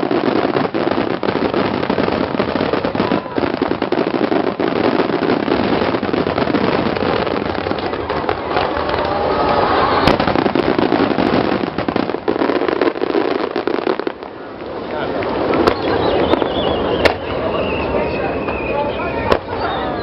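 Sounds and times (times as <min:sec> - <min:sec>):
fireworks bursts and crackles: 0:00.0 - 0:20.0
sharp firework bang: 0:09.9 - 0:12.4.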